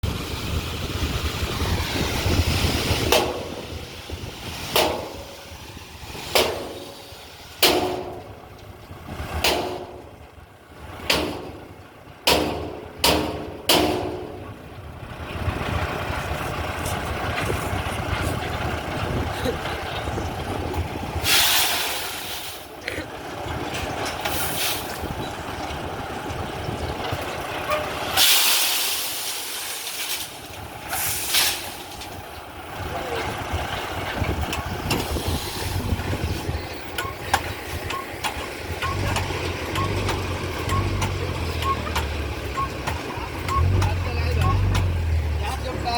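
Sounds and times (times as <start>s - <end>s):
diesel engine running: 0.0s - 45.9s
hiss bursts: 21.2s - 22.7s.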